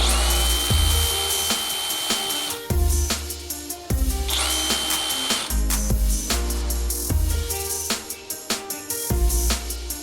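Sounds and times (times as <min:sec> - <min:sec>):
sharp drum hits: 0:00.0 - 0:03.3
background music with deep bass: 0:00.0 - 0:10.0.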